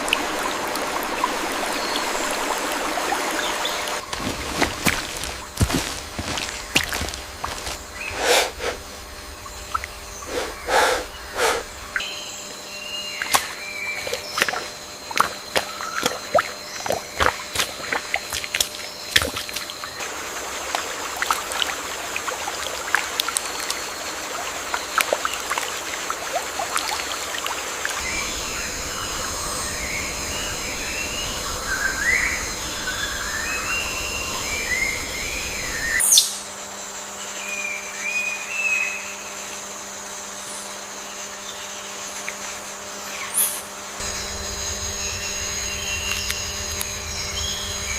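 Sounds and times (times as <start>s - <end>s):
birds chirping: 0.0s - 20.1s, 40.5s - 47.9s
high insect drone: 0.0s - 47.9s.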